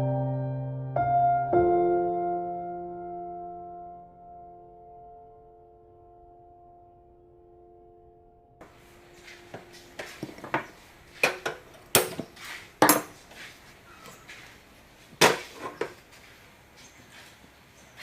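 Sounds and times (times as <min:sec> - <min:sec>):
cookware knocking and clanking: 0:10.0 - 0:13.2, 0:15.2 - 0:16.0.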